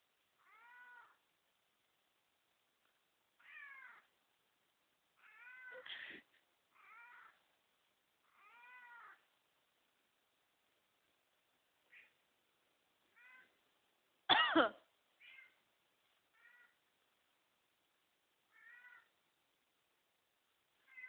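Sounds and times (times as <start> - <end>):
cat meowing: 0.4 - 1.2, 3.4 - 4.1, 5.2 - 5.9, 6.7 - 7.4, 8.2 - 9.2, 13.1 - 13.6, 15.2 - 15.6, 16.3 - 16.8, 18.5 - 19.1, 20.8 - 21.0
person coughing: 14.3 - 14.8.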